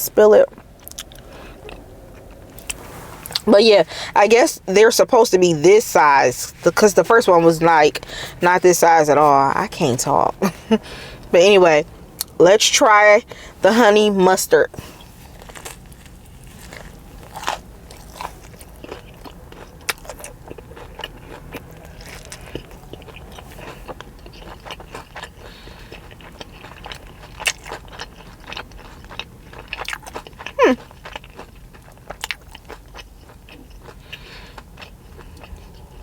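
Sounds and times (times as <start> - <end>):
crisp chewing crunches: 0.2 - 4.4, 14.7 - 36.0.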